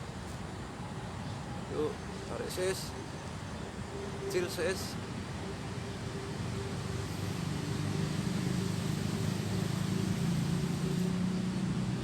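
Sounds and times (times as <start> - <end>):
motor vehicle engine running: 6.9 - 12.0.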